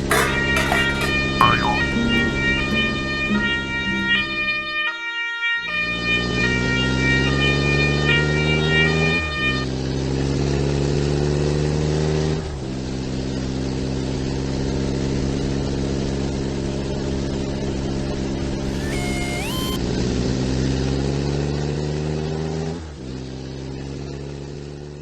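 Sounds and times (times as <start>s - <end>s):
two-tone siren: 0.6s - 9.8s, 18.6s - 19.8s
short rising tone: 18.6s - 19.8s.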